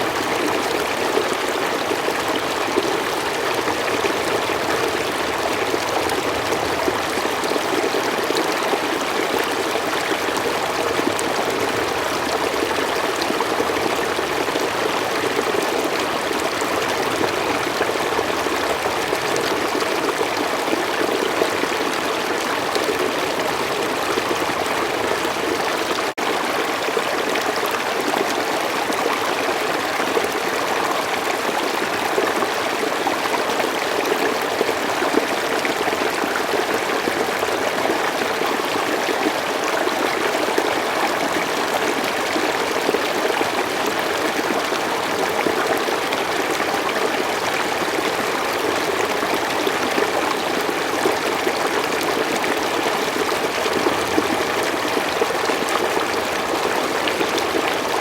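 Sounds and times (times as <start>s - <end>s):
stream flowing over stones: 0.0s - 58.0s.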